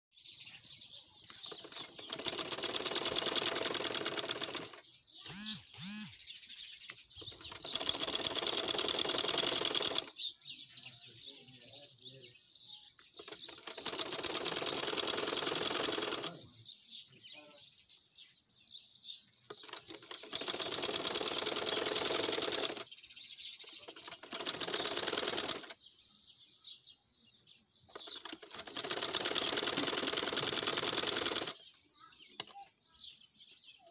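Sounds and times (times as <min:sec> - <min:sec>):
sewing machine stitching: 0:01.3 - 0:06.2, 0:07.2 - 0:10.2, 0:13.2 - 0:16.4, 0:19.5 - 0:22.9, 0:23.6 - 0:25.8, 0:27.9 - 0:31.6.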